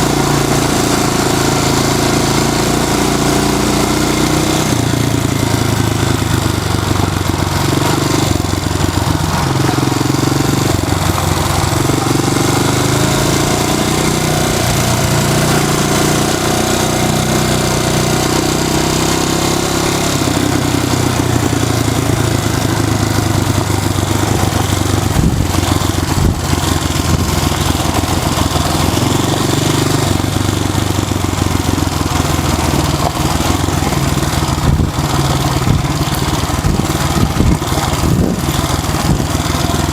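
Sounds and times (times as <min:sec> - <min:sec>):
motorcycle engine running: 0:00.0 - 0:39.9
steady rushing noise: 0:19.4 - 0:39.9.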